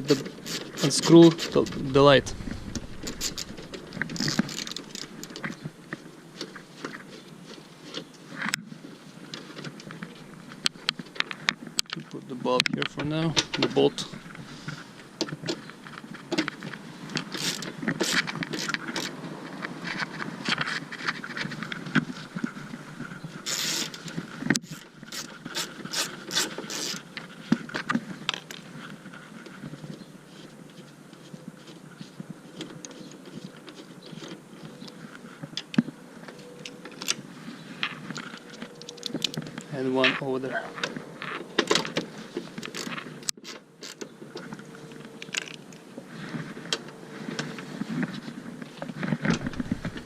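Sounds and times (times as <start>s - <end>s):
metal parts scraping and knocking: 0.5s - 5.7s, 49.2s - 50.0s.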